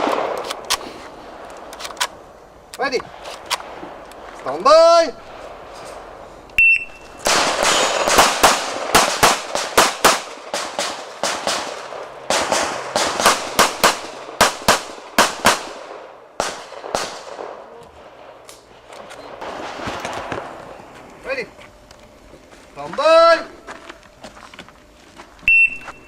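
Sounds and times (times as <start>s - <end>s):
shot timer beep: 6.6s - 7.2s, 25.5s - 26.0s
pistol firing rapid shots: 7.2s - 17.7s.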